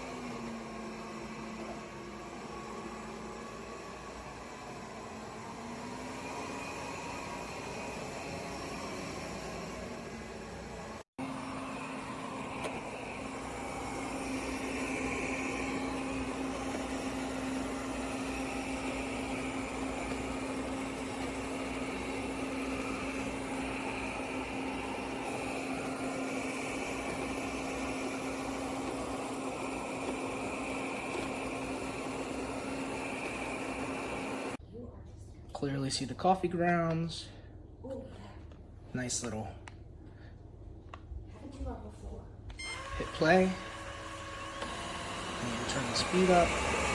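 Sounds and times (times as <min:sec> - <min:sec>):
robot vacuum cleaner running: 0:00.0 - 0:34.6, 0:42.6 - 0:46.9.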